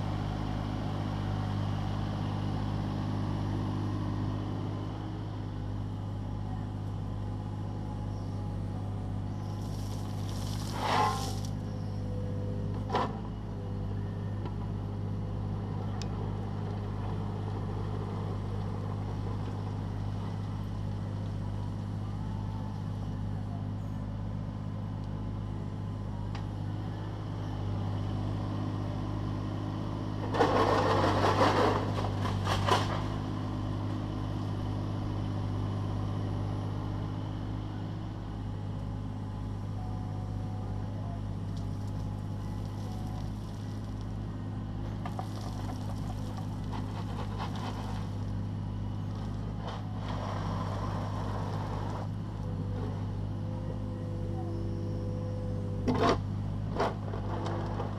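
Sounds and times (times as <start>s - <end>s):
diesel engine running: 0.0s - 57.9s
bucket scraping and clattering stone: 9.6s - 11.6s, 30.3s - 33.2s, 45.0s - 48.4s, 56.8s - 57.9s.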